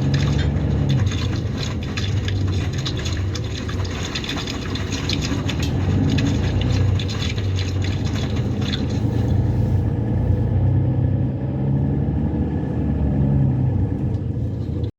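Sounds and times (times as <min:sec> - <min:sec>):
drum rumbling: 0:00.0 - 0:10.6
washing machine motor hum: 0:00.0 - 0:14.9.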